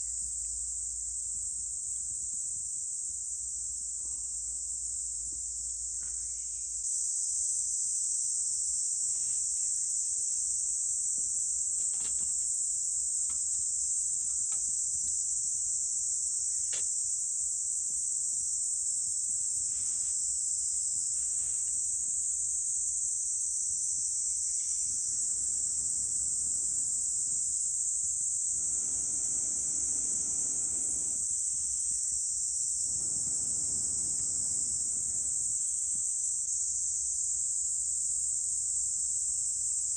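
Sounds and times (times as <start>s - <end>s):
high-pitched insect chorus: 0.0s - 39.9s.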